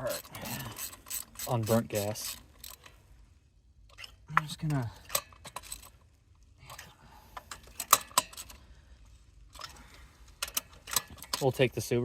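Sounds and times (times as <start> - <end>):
metallic clicks and clinks: 0.0 - 3.0, 3.9 - 6.0, 6.6 - 8.6, 9.5 - 11.8.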